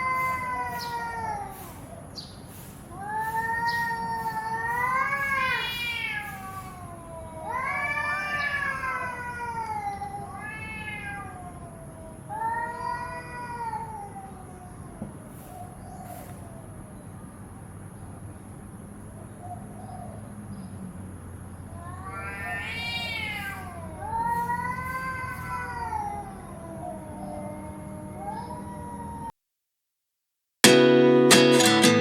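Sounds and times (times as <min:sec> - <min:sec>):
cat meowing: 0:00.0 - 0:01.9, 0:02.9 - 0:15.5, 0:21.7 - 0:29.3.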